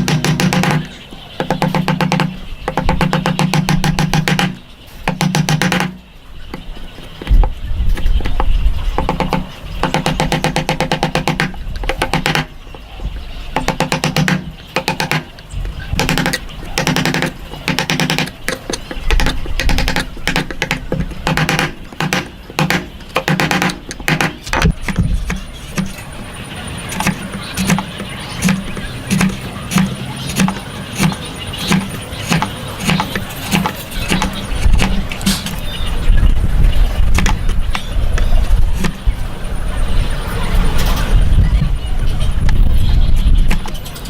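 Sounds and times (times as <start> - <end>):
hand tools working wood: 13.6 - 35.8.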